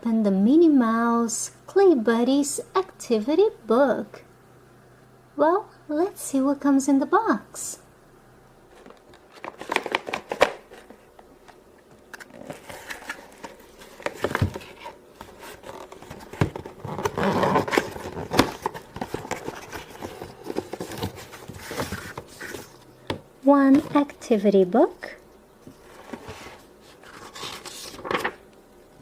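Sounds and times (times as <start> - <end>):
rustling packaging: 8.7 - 22.9, 25.7 - 28.4
cardboard box being opened: 12.2 - 22.8.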